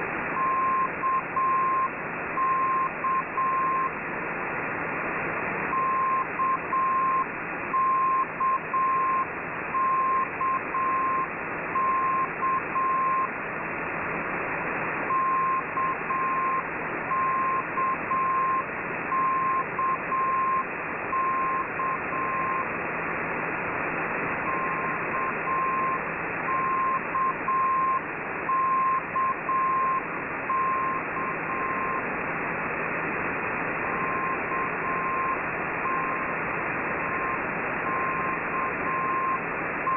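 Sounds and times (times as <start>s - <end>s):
radio static: 0.0s - 39.9s
morse code beeps: 0.4s - 3.9s, 5.7s - 13.3s, 15.1s - 22.7s, 24.5s - 32.0s, 33.9s - 36.3s, 37.1s - 39.9s.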